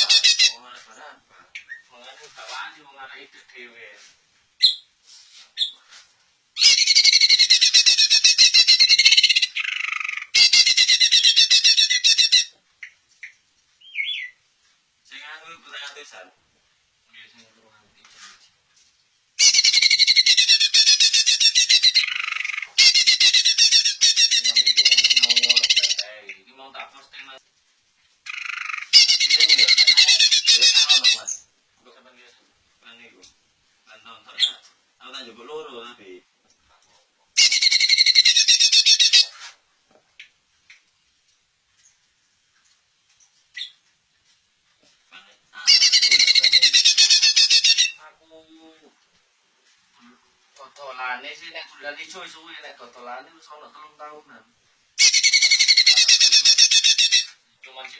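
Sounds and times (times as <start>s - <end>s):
bird singing: 6.6s - 14.4s, 19.4s - 26.1s, 28.3s - 31.5s, 45.7s - 48.0s
bird singing high chattering notes: 13.8s - 14.4s, 19.4s - 26.1s, 28.3s - 31.4s, 55.0s - 57.3s.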